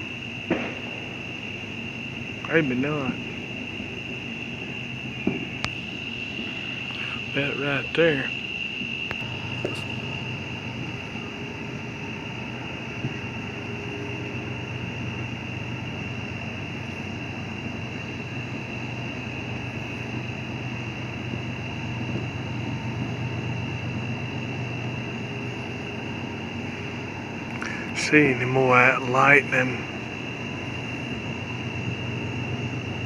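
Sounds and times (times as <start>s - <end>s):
insect chorus trilling: 0.0s - 33.0s.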